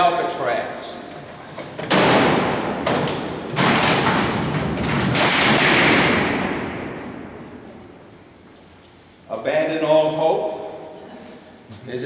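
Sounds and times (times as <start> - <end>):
steel cell doors rolling and clanging: 1.1 - 6.9
loud metal door slam echoing: 1.6 - 8.0.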